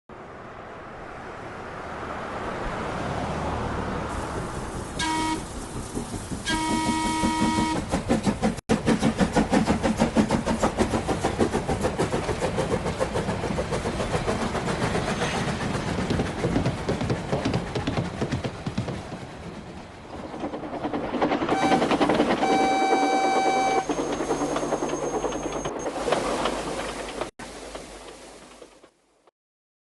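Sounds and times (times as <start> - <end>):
train wheels clattering on rails: 4.1 - 29.0
train horn blasts: 5.0 - 5.5, 6.5 - 7.9, 21.5 - 23.9.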